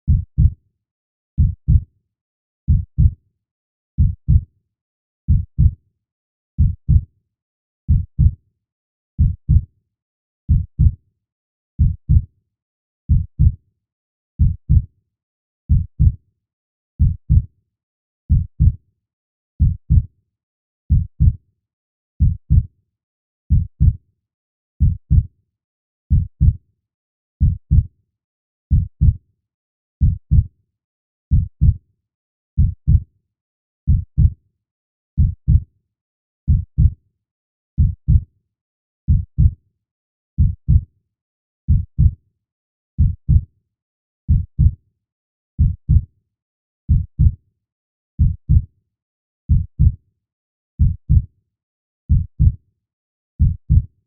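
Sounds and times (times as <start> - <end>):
heartbeat thumps: 13.1 - 13.5, 30.0 - 30.4, 32.6 - 33.0, 43.0 - 43.4, 48.2 - 48.6, 49.5 - 49.9.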